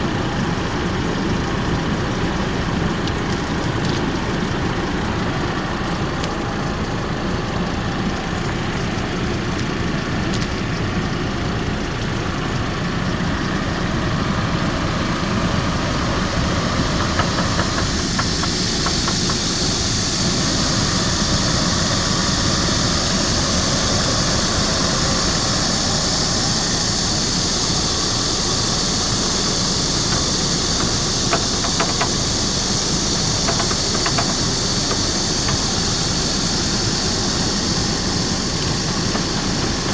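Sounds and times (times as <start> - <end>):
car engine idling: 0.0 - 39.9
steady high hiss: 13.4 - 39.9.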